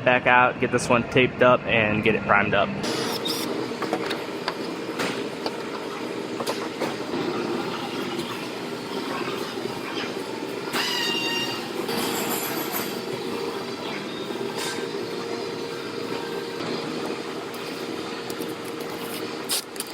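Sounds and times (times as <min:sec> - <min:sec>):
steady shop hum: 0:00.0 - 0:19.9
brief squeal: 0:10.8 - 0:12.6.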